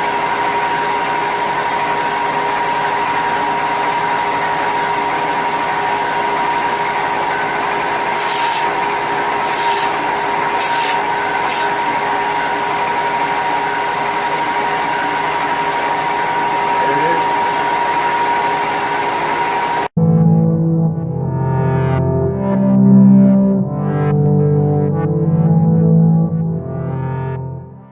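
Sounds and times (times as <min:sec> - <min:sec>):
power tool motor whining: 0:06.0 - 0:19.9
brief hissing bursts: 0:08.1 - 0:08.8, 0:09.4 - 0:11.8.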